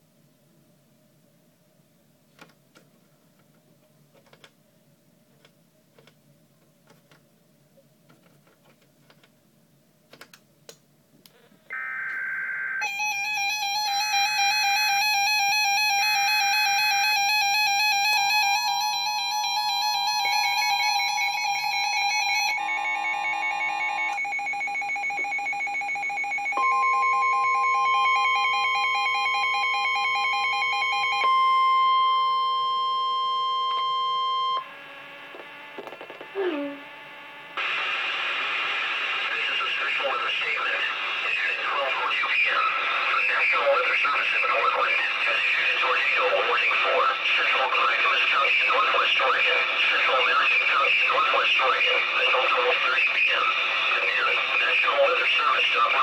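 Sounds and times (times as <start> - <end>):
electronic alert tones: 11.7 - 13.4.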